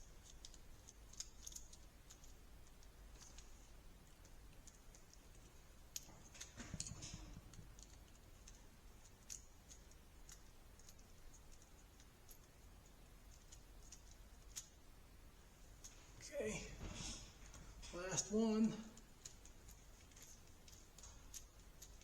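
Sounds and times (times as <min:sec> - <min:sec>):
handling noise: 0:15.5 - 0:21.9.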